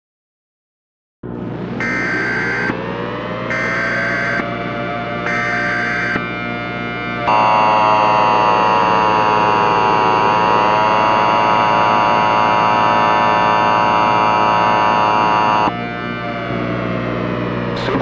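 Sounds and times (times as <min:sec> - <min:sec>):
harsh buzzing alarm tone: 0:01.8 - 0:04.6, 0:05.2 - 0:06.3, 0:06.9 - 0:18.0.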